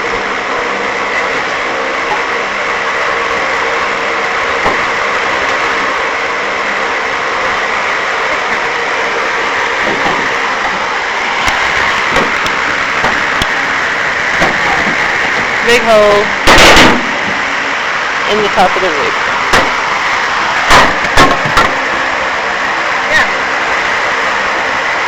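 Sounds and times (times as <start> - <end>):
motor running: 0.0 - 25.0
sharp knocks: 4.6 - 5.0, 9.8 - 10.4, 12.0 - 13.5, 14.3 - 15.5, 19.5 - 19.8, 20.6 - 21.8.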